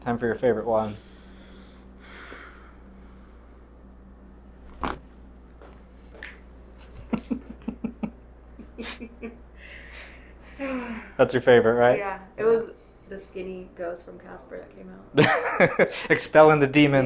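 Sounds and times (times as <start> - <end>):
neck joints cracking: 4.6 - 7.4.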